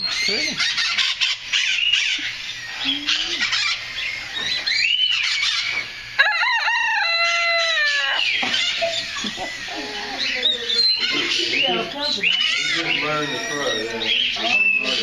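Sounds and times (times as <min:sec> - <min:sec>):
birds squawking: 0:00.0 - 0:15.0
rooster crowing: 0:06.2 - 0:11.3.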